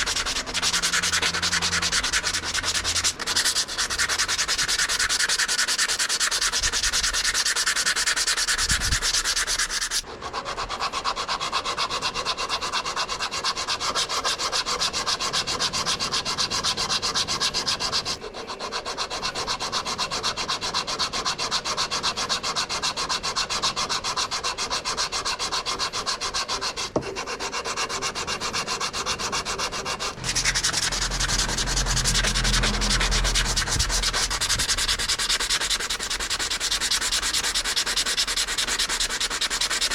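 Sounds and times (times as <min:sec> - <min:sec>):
low hum: 0:00.0 - 0:04.6, 0:30.0 - 0:37.3
rapid scraping and rubbing: 0:00.0 - 0:11.2, 0:25.9 - 0:39.9.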